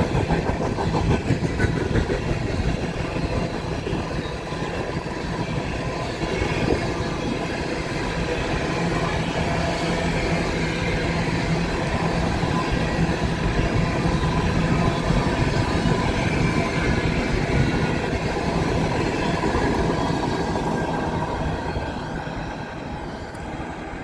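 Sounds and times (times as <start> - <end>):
steady low hum: 0.0 - 3.8
train wheels on rails: 0.0 - 24.0.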